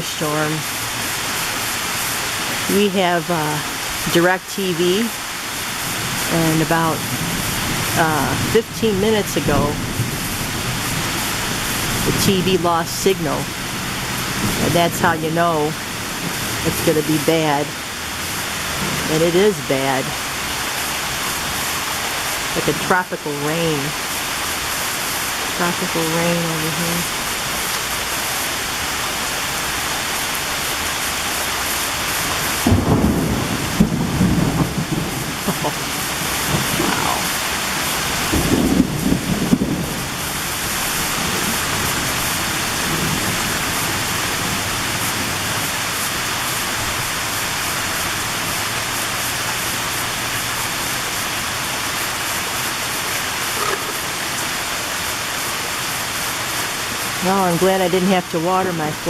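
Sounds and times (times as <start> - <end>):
heavy rain pouring: 0.0 - 59.0
thunder rumbling: 5.7 - 22.6, 31.9 - 49.1.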